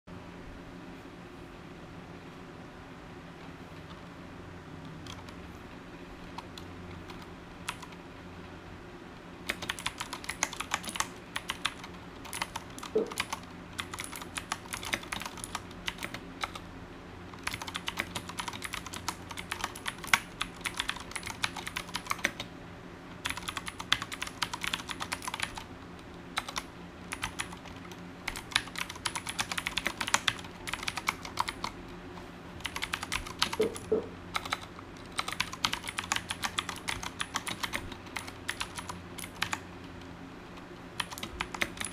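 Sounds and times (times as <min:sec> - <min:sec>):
mechanical keyboard typing clicks: 0:04.8 - 0:05.4, 0:06.2 - 0:08.0, 0:09.4 - 0:16.6, 0:17.4 - 0:22.5, 0:23.2 - 0:31.8, 0:32.6 - 0:40.1, 0:41.0 - 0:41.9.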